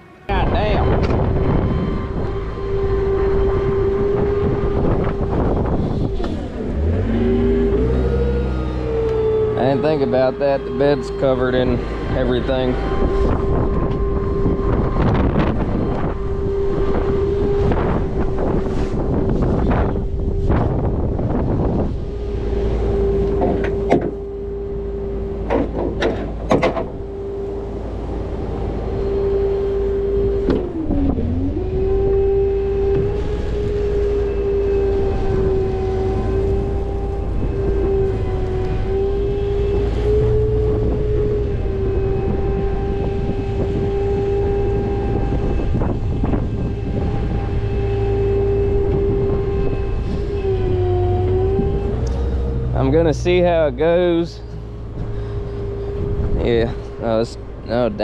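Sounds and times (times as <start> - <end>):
tow truck whining: 0.0 - 58.0
metallic knocks and clanks: 25.4 - 26.9.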